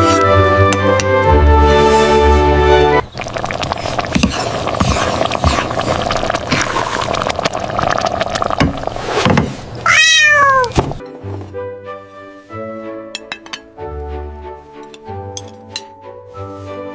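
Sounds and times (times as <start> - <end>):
background music: 0.0 - 3.0, 11.0 - 16.9
kitten meowing: 9.8 - 10.8.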